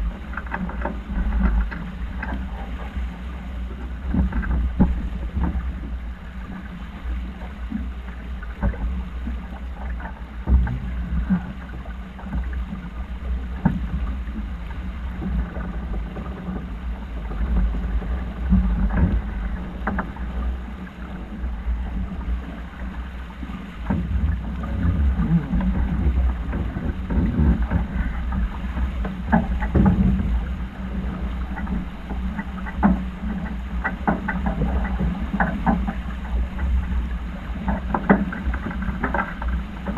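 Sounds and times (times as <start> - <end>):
wind buffeting microphone: 13.3 - 39.9.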